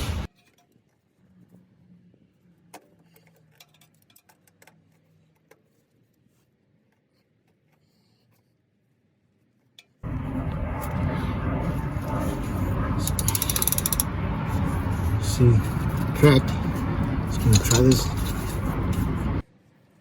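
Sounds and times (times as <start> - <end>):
faint low hum: 10.0 - 19.4.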